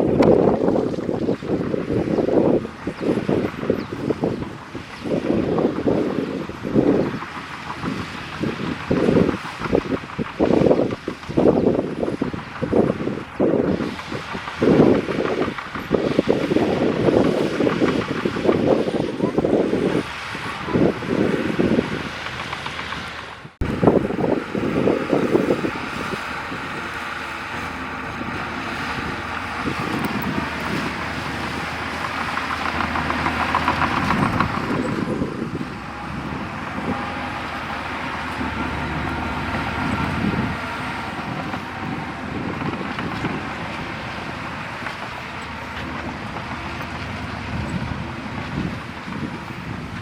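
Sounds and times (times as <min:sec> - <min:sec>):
bulldozer diesel engine: 0:00.0 - 0:50.0
fast rattle: 0:25.3 - 0:49.6.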